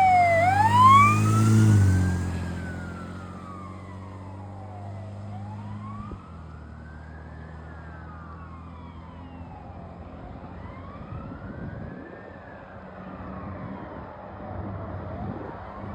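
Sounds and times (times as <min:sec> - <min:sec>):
truck engine drone: 0:00.0 - 0:11.2
fire engine siren wailing: 0:00.0 - 0:15.9.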